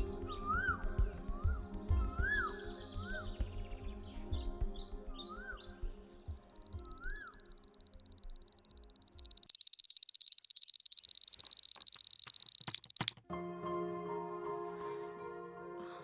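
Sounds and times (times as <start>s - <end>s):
alarm clock ringing: 6.4s - 13.2s
alarm clock switch click: 7.5s - 13.2s.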